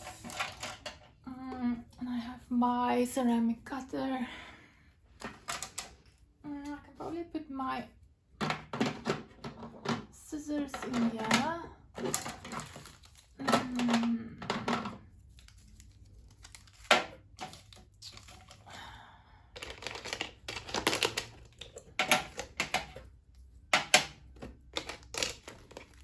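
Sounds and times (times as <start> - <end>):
craft tools clicking and clattering: 0.0 - 1.2, 8.4 - 12.8, 19.6 - 23.1.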